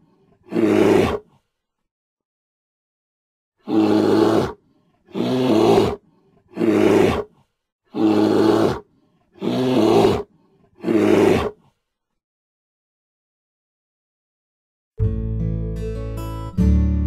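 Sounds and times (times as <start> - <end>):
bear roaring: 0.4 - 1.3, 3.6 - 7.3, 7.9 - 11.6.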